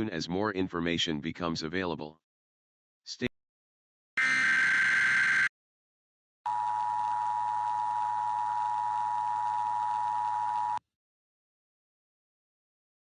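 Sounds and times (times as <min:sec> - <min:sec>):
warbling digital data screech: 0:04.2 - 0:05.5.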